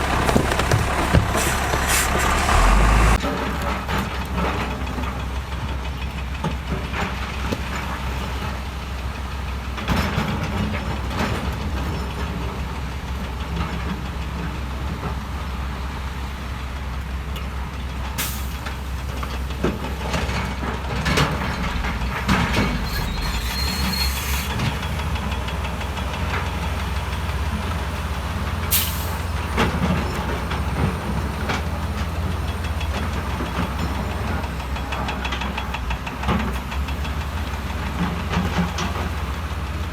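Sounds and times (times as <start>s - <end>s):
sharp knocks and clanks: 0.0s - 3.2s
heavy machine diesel engines: 0.0s - 39.9s.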